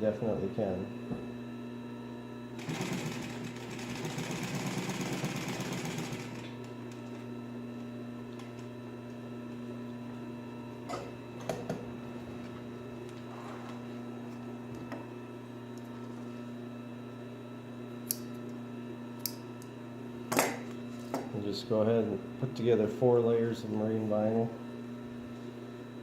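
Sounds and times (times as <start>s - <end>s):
sewing machine stitching: 2.6s - 6.5s.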